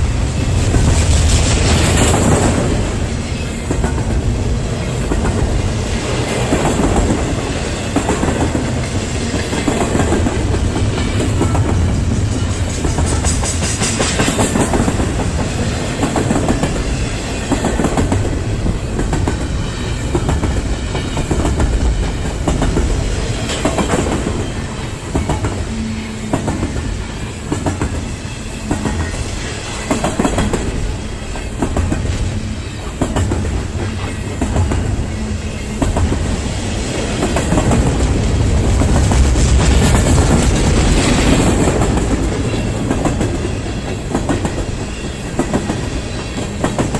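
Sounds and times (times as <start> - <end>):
train rumble: 0.0 - 46.9
train wheels clattering over rail joints: 0.4 - 35.2.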